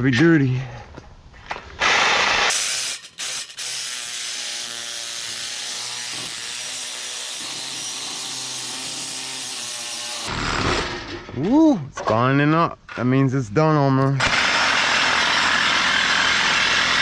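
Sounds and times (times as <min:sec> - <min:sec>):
power saw cutting steel: 0:01.8 - 0:11.3, 0:14.2 - 0:17.0.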